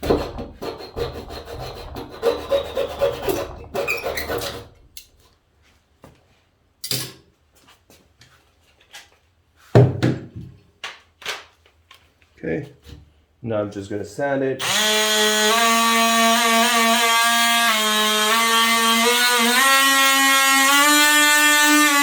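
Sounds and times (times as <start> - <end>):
hand tool rasping wood: 0.0 - 5.0, 14.6 - 22.0.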